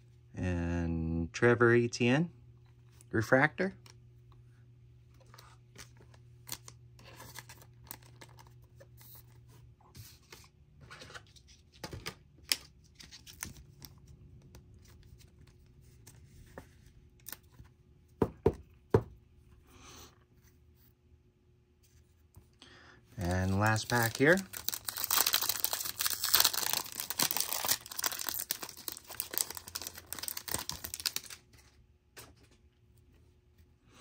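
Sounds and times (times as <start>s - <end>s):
foil wrappers rustling: 23.2s - 31.7s.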